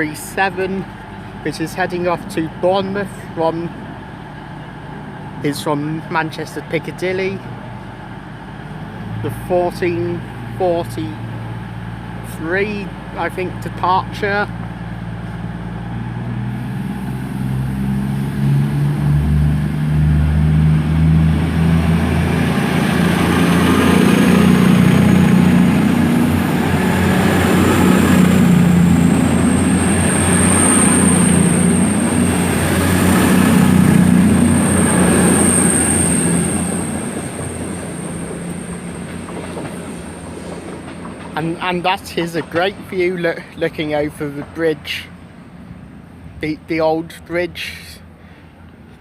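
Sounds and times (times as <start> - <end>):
train diesel engines revving: 0.0 - 48.9
high whine: 17.0 - 44.8
train wheel noise: 21.4 - 44.6.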